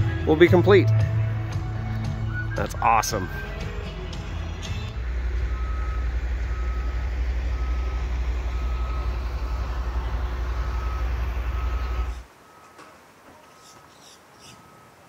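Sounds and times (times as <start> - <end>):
heavy low rumble: 0.0 - 12.3
reversing alarm beeping: 2.3 - 3.7, 4.3 - 12.9, 13.7 - 15.0.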